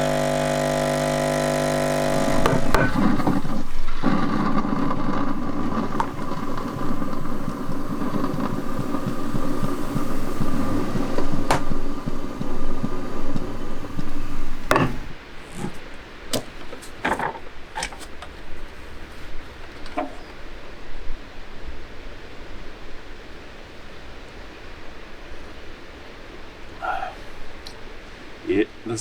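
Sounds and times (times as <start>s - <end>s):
vehicle engine running: 0.0s - 15.2s.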